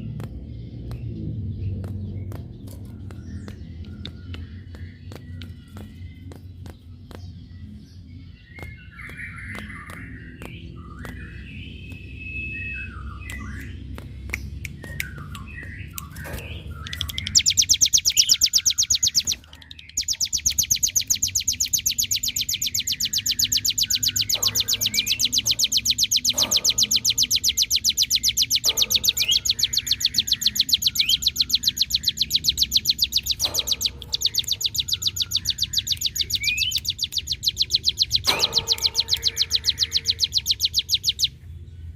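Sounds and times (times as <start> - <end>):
songbird chirps: 0.0 - 41.9
fast buzzing bird trill: 16.9 - 41.4.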